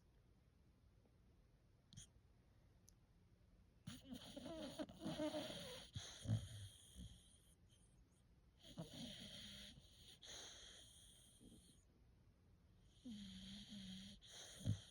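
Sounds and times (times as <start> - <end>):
puppy snoring: 3.8 - 7.5, 8.6 - 11.8, 12.9 - 14.9.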